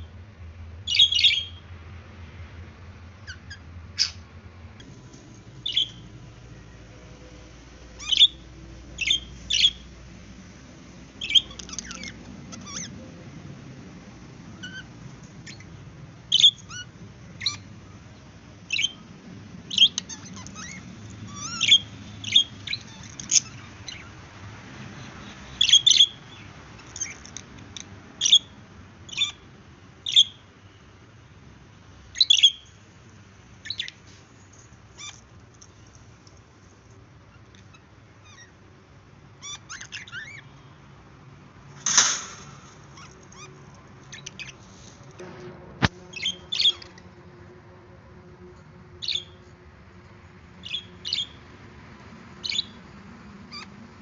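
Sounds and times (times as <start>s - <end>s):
budgerigars chirping: 0.9s - 1.6s, 5.6s - 6.0s, 8.0s - 8.4s, 9.0s - 9.8s, 11.2s - 13.0s, 14.6s - 15.7s, 16.3s - 17.7s, 18.7s - 19.0s, 19.7s - 24.1s, 25.2s - 27.2s, 28.2s - 29.4s, 30.0s - 30.4s, 32.2s - 32.7s, 33.6s - 34.0s, 39.4s - 40.6s, 46.1s - 46.9s, 49.0s - 49.4s, 50.6s - 51.4s, 52.4s - 52.8s, 53.5s - 53.8s.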